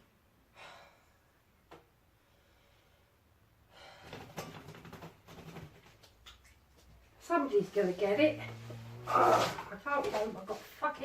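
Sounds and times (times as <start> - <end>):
faint rustling and handling: 4.3 - 11.0.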